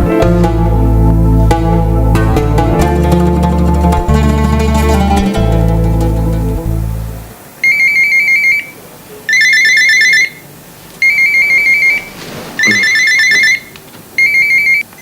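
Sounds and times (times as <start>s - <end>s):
telephone ringing electronic trill: 9.3s - 10.4s, 11.0s - 14.8s.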